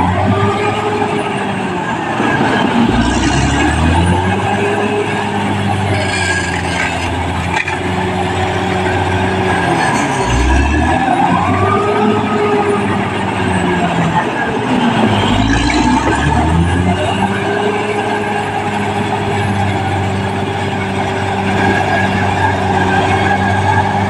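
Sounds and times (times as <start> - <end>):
bulldozer diesel engine running: 0.0 - 24.0.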